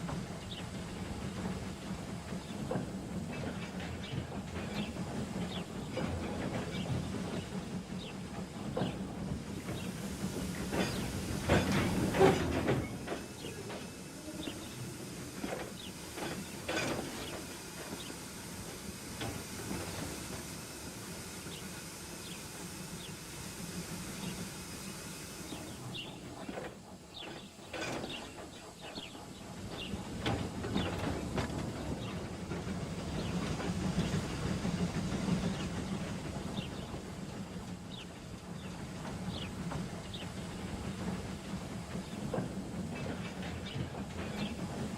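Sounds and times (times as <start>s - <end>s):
rail clicks: 0.0s - 44.9s
steam hissing: 0.0s - 44.9s.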